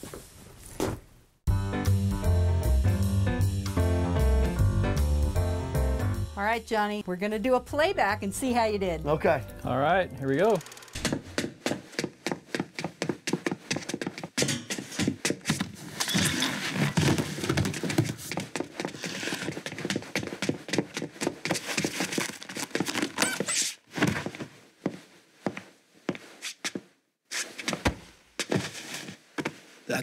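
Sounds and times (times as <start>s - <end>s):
dress shoe footsteps on hard floor: 11.0s - 15.8s.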